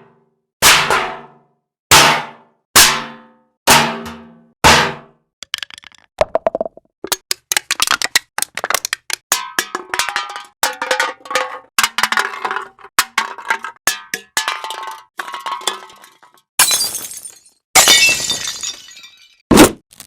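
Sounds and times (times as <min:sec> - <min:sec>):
metal objects clattering on floor: 0:09.6 - 0:16.4.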